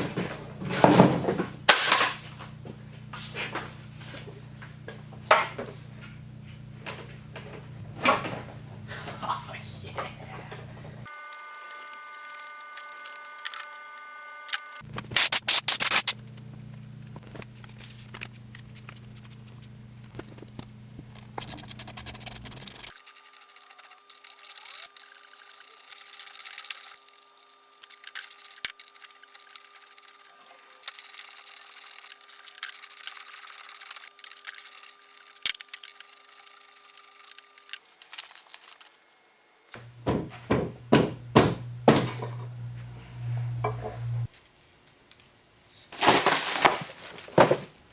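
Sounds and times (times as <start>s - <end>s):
electrical hum: 0.0s - 44.3s
hand tools scraping metal: 11.1s - 13.8s, 21.4s - 38.8s.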